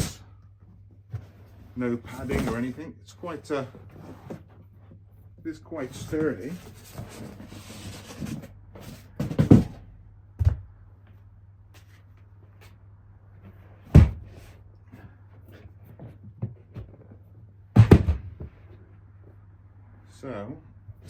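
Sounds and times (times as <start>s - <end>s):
plastic case knocks and thuds: 9.2s - 9.8s, 13.9s - 14.3s, 17.7s - 18.6s.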